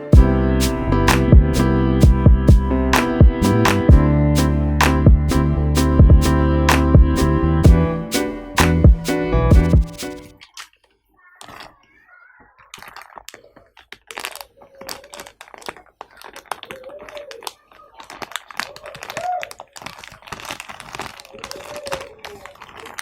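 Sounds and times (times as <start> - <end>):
faint voice: 21.3 - 23.0.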